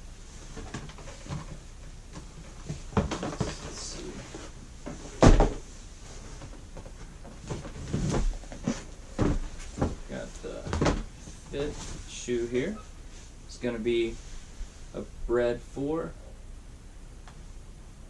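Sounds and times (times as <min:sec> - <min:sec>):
shoe thump: 0:07.5 - 0:11.1.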